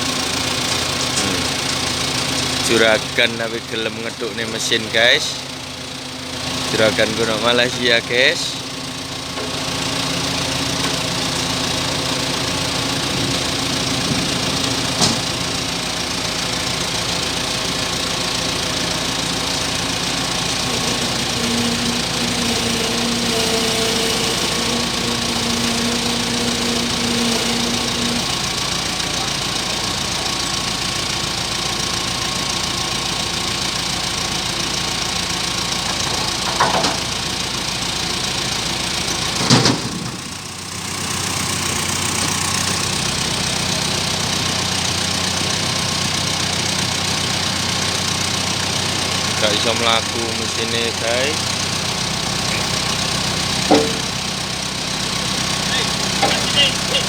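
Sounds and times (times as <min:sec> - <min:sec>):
higher hum: 0:00.0 - 0:29.9
heavy vehicle engine running: 0:00.0 - 0:57.0
sharp knocks: 0:53.6 - 0:54.2.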